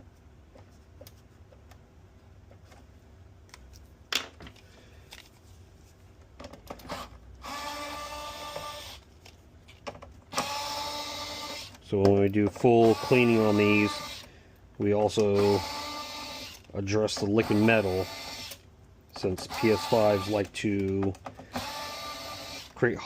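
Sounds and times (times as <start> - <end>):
electric screwdriver whine: 6.9 - 9.0, 10.3 - 11.8, 19.5 - 20.5, 21.5 - 22.8.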